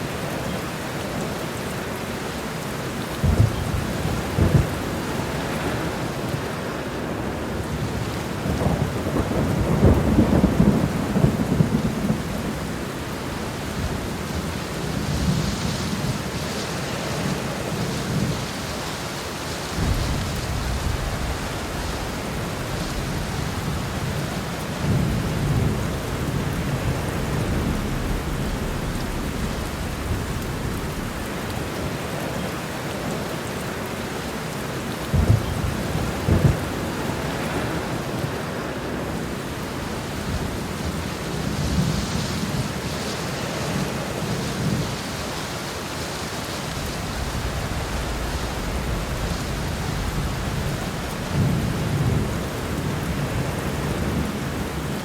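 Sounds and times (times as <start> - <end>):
heavy rain pouring: 0.0 - 55.0
thunder rumbling: 3.2 - 18.6, 19.7 - 32.8, 35.0 - 39.2, 46.6 - 55.0
sharp thunder claps: 19.8 - 32.0, 47.1 - 53.4.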